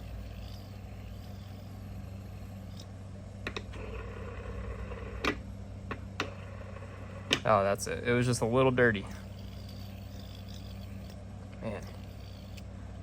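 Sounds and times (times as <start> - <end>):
fidget spinner bearing spinning: 0.0 - 2.9, 8.8 - 12.7.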